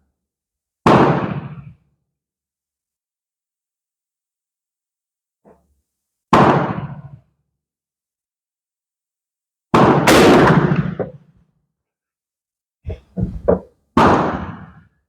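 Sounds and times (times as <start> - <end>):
loud gunshots: 0.9 - 1.6, 6.3 - 7.0, 9.8 - 11.2, 14.0 - 14.7
small knocks: 12.9 - 13.7.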